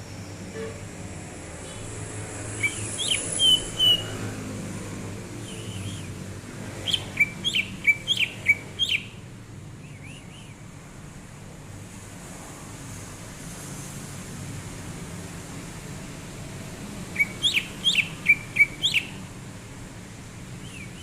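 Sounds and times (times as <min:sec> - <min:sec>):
bird singing whistled notes: 0:02.5 - 0:04.2, 0:05.4 - 0:06.2, 0:06.8 - 0:09.2, 0:09.8 - 0:10.6, 0:17.1 - 0:19.3, 0:20.6 - 0:21.0.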